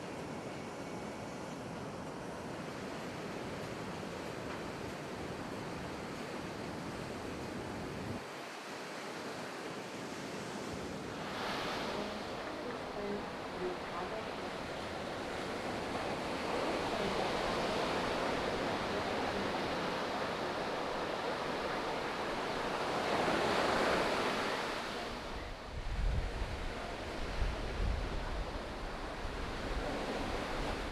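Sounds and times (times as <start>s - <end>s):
ocean surf washing: 0.0s - 30.9s
wind gusting on microphone: 6.6s - 30.9s
wave breaking: 8.2s - 30.9s.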